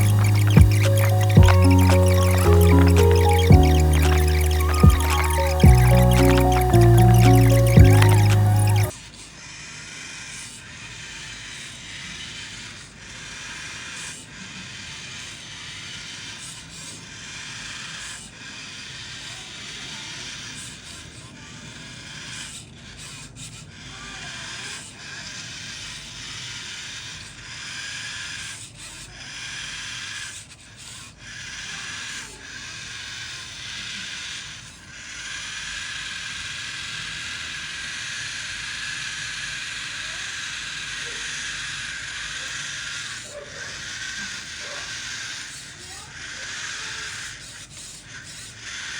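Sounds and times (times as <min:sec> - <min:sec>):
small gear motors whirring: 0:00.0 - 0:08.9.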